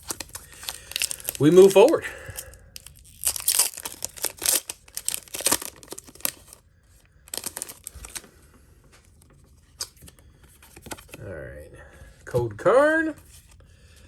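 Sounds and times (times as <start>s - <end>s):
foil wrapper tearing and crinkling: 0.0s - 6.6s, 7.3s - 8.2s.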